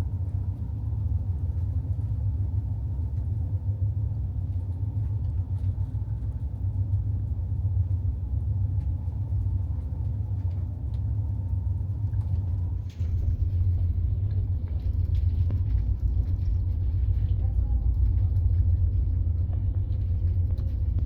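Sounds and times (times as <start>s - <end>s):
low engine rumble: 0.0s - 21.0s.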